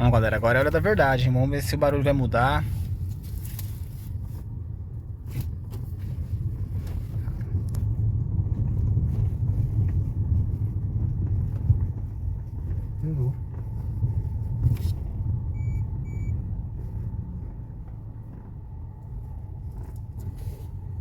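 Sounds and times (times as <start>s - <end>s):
car road rumble: 0.0s - 21.0s.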